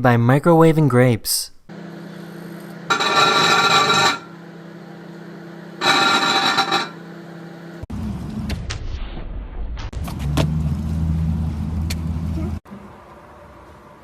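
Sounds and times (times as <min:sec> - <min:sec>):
microwave oven humming: 0:01.7 - 0:08.2.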